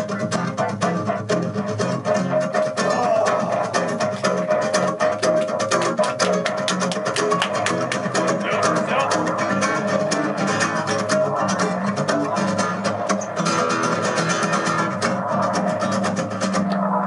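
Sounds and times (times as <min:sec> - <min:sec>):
rapidly strummed guitar: 0:00.0 - 0:17.0
sustained low notes: 0:07.4 - 0:17.0.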